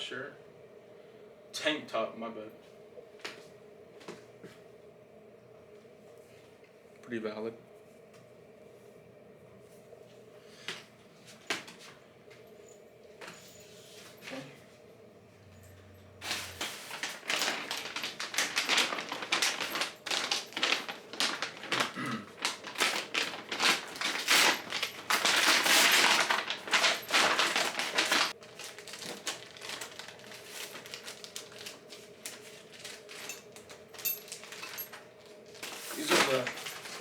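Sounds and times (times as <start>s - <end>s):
packaging rustling and crinkling: 16.2s - 37.0s.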